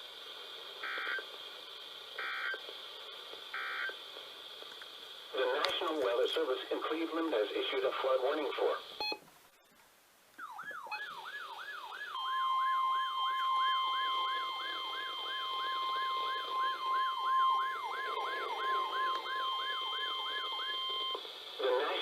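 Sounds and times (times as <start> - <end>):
siren sweeping down: 10.4 - 21.2.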